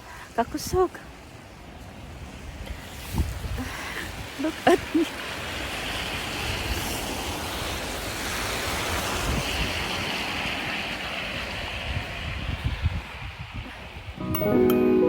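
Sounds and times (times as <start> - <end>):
strong wind buffeting microphone: 2.0 - 5.0, 6.0 - 14.2.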